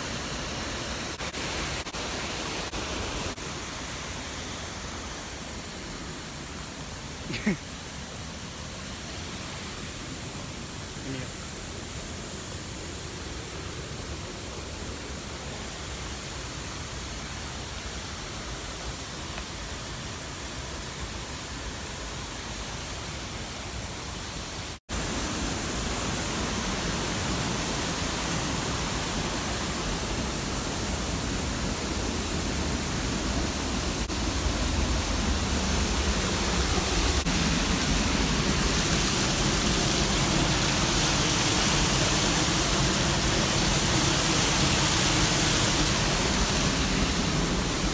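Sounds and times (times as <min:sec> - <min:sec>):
waterfall rushing: 0:24.9 - 0:47.9.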